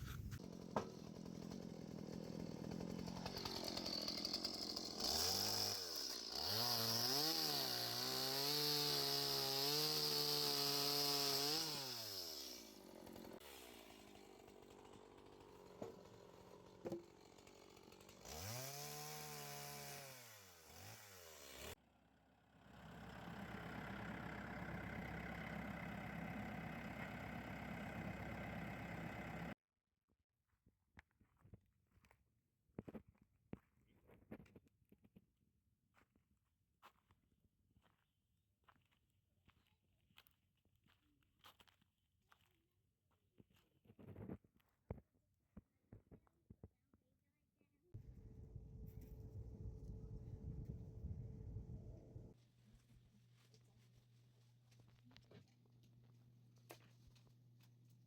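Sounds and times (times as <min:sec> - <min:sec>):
sawmill engine revving: 0:00.0 - 0:21.8, 0:22.6 - 0:29.6
low engine hum: 0:48.0 - 0:52.3.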